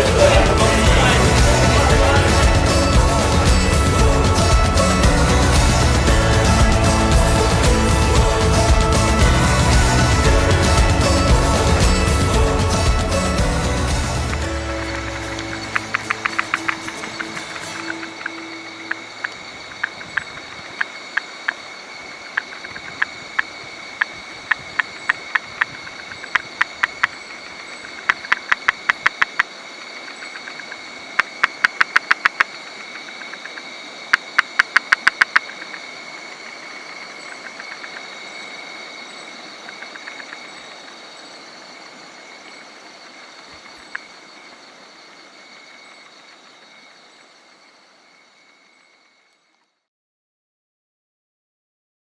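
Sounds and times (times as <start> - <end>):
high-pitched background hum: 0.0 - 20.6
frog clicking calls: 14.2 - 49.7.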